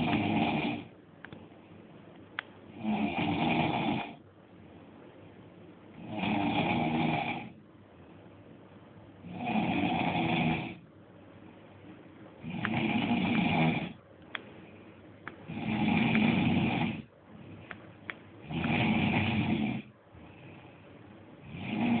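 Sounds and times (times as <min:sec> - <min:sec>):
person snoring loudly: 0:00.0 - 0:00.9, 0:02.8 - 0:04.2, 0:06.0 - 0:07.6, 0:09.2 - 0:10.8, 0:12.4 - 0:14.0, 0:15.5 - 0:17.1, 0:18.4 - 0:19.9, 0:21.4 - 0:22.0.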